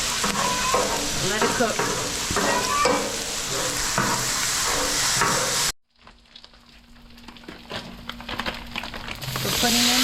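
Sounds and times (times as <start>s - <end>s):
rice sizzling on a griddle: 0.0s - 5.8s, 8.9s - 10.0s
metal spatula scraping: 0.1s - 5.7s.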